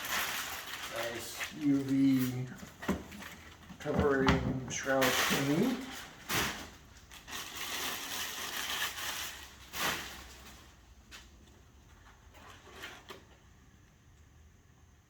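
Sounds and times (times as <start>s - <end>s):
packaging rustling: 0.0s - 3.9s, 4.7s - 10.8s.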